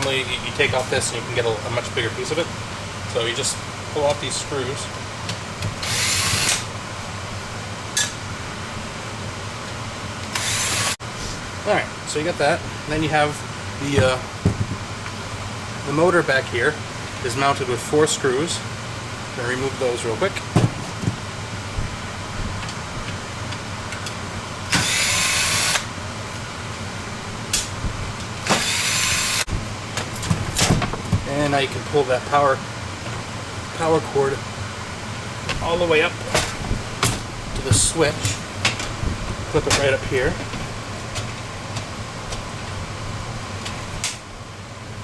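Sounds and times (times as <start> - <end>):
power drill whirring: 5.8 - 6.7, 10.3 - 11.0, 24.7 - 25.9, 28.4 - 29.5.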